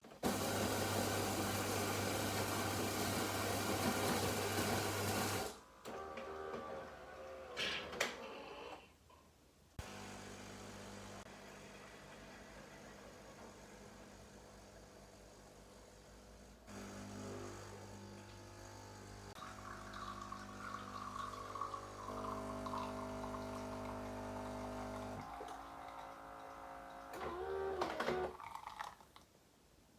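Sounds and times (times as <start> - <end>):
coffee machine hiss: 0.2 - 5.6, 15.2 - 26.6
coffee machine hum: 0.2 - 7.6, 9.8 - 28.8
coffee trickling into cup: 19.4 - 27.2, 28.1 - 29.3.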